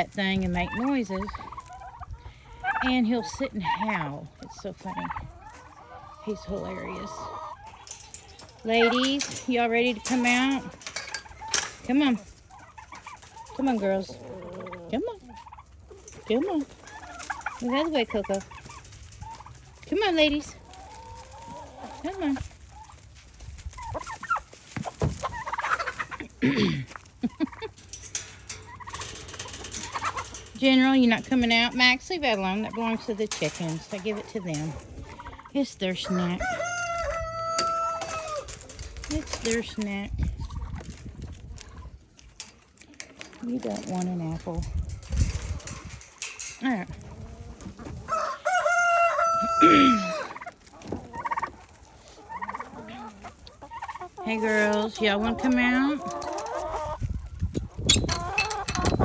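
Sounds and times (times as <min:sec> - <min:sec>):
chickens and turkeys calling: 0:00.0 - 0:59.0
turkey gobbling: 0:00.5 - 0:39.6, 0:47.1 - 0:59.0
rooster crowing: 0:48.1 - 0:50.1.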